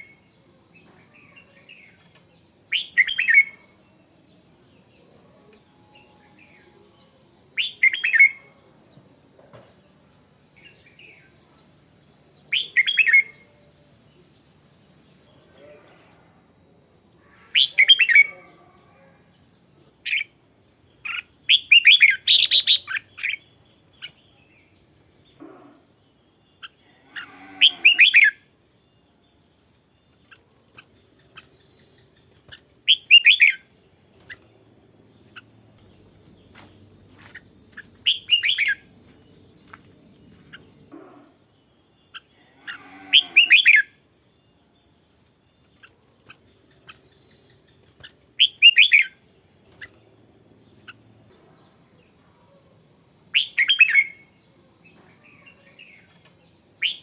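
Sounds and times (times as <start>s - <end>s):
bulbul singing warbled phrases: 17.6s - 18.5s
thin high whine: 29.3s - 41.4s.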